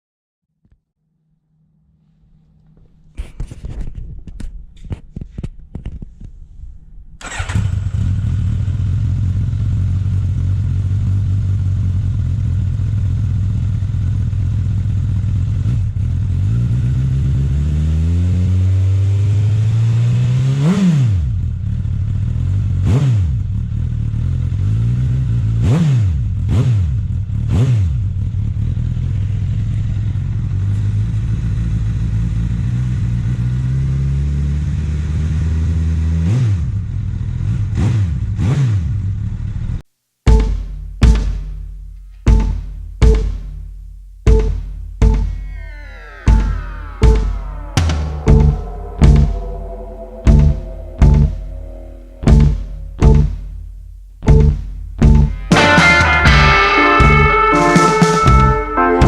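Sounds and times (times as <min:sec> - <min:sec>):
motorcycle engine starting and idling: 0:07.2 - 0:17.5
motorcycle engine revving: 0:07.2 - 0:39.8.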